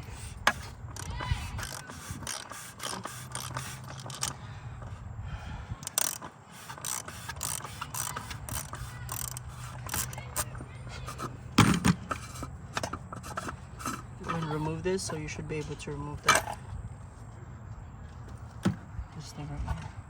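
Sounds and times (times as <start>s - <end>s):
ratchet clicking: 0.0s - 4.4s, 5.8s - 10.5s.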